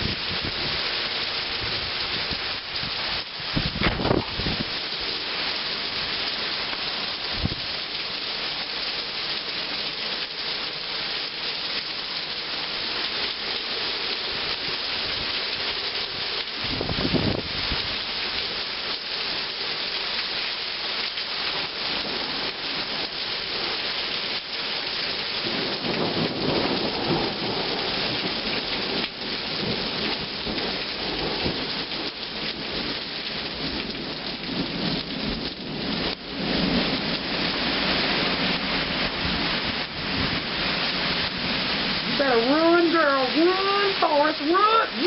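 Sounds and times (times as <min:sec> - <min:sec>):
low rumble of thunder: 0:00.0 - 0:04.8, 0:16.6 - 0:18.0, 0:25.3 - 0:42.3
heavy rain splashing: 0:00.0 - 0:45.0.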